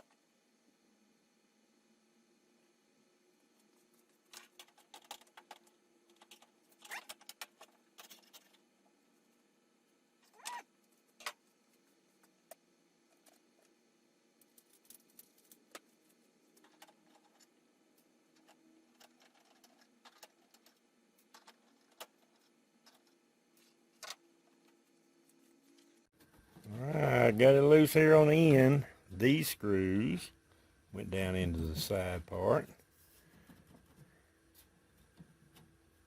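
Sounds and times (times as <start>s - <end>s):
metal parts and screws clicking: 4.2s - 8.6s, 16.6s - 24.2s.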